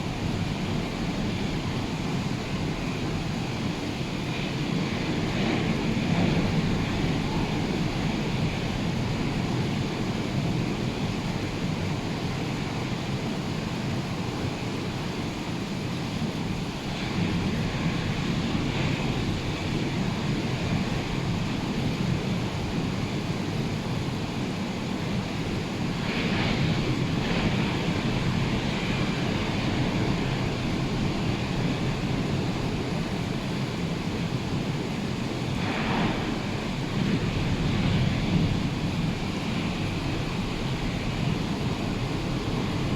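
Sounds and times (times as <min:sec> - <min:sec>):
wind buffeting microphone: 0:00.0 - 0:15.4, 0:16.3 - 0:42.9
rough surf breaking: 0:35.3 - 0:42.9.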